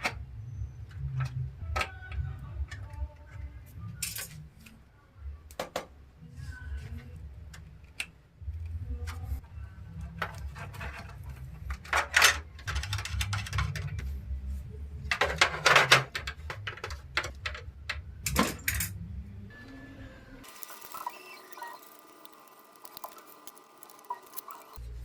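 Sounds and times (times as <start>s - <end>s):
clicks and rattles of computer parts: 10.2s - 14.0s, 15.1s - 19.0s.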